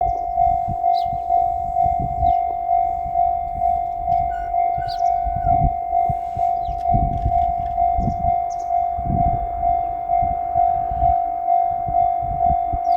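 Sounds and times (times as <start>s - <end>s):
level crossing warning bell: 0.0s - 12.9s.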